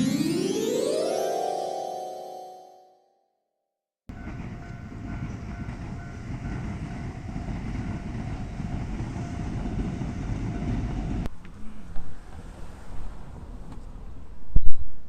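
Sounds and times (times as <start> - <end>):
train rumbling past: 4.1 - 14.4.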